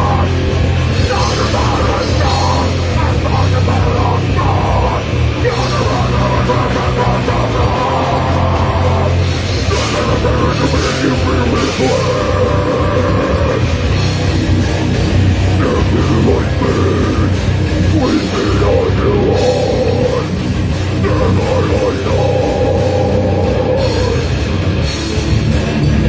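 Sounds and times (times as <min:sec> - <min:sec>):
fast dense drumming: 0:00.0 - 0:26.0
loud distorted guitars: 0:00.0 - 0:26.0.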